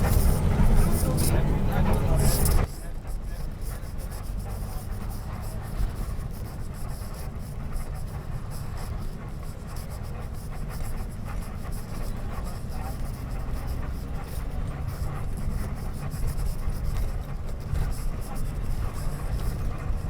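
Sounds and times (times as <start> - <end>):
light scratchy rattle: 0.0 - 6.2
bus engine and tyres rumbling: 0.0 - 20.0.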